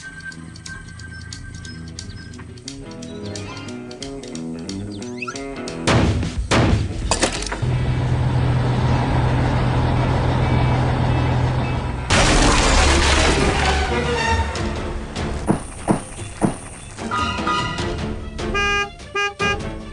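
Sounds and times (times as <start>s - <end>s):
music: 0.0s - 7.8s, 12.8s - 19.9s
sharp crashing impacts: 12.1s - 14.0s.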